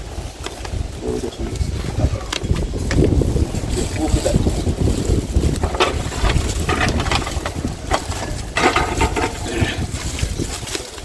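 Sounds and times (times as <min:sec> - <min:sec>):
wind buffeting microphone: 0:00.0 - 0:11.0
handling knocks and clatters: 0:02.3 - 0:11.0.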